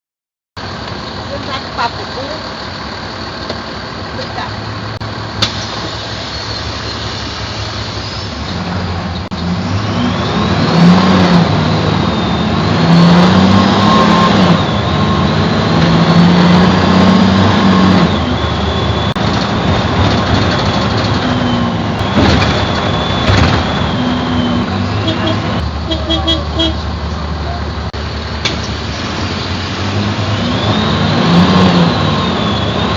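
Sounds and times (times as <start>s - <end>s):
bus diesel engine accelerating: 0.6s - 32.9s
high turbo whistle: 9.6s - 19.2s, 21.1s - 26.8s, 30.2s - 32.9s.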